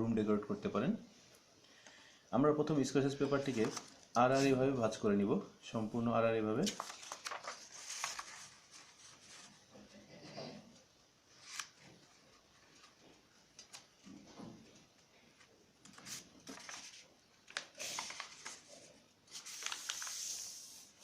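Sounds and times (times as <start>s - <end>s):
paper being folded and creased: 3.2s - 4.6s, 6.6s - 9.7s, 11.3s - 13.0s, 15.4s - 21.0s.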